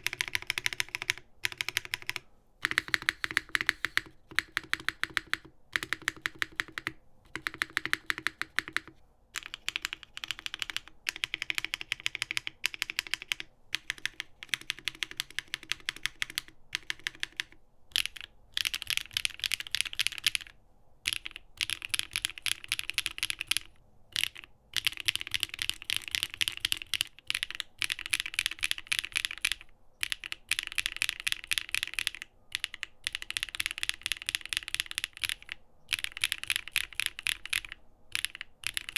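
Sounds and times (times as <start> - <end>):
fast mechanical keyboard typing: 0.0 - 38.9.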